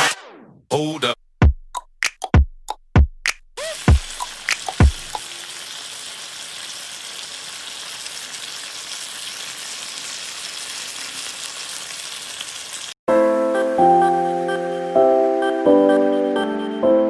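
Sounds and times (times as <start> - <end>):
chicken sizzling in a pan: 3.6 - 13.0.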